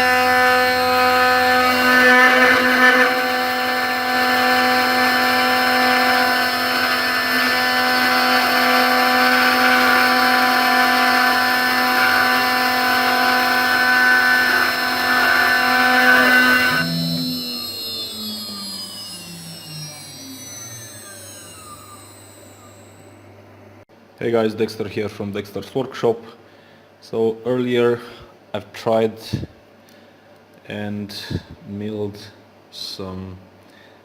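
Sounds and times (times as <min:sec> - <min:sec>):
gritty metal cutting noise: 0:00.0 - 0:23.1
router spindle whine: 0:00.0 - 0:23.8.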